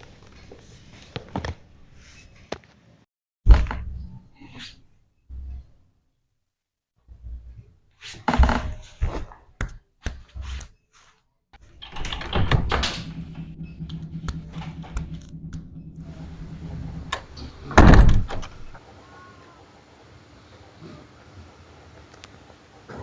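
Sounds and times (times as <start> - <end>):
sharp knocks and thuds: 11.6 - 18.8
steady low hum: 11.6 - 18.8
loud thump: 11.8 - 18.8.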